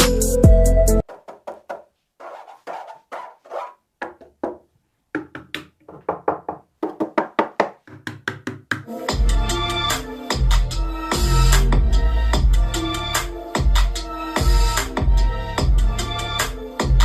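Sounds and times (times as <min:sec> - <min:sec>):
deep bass hits: 0:10.4 - 0:12.8.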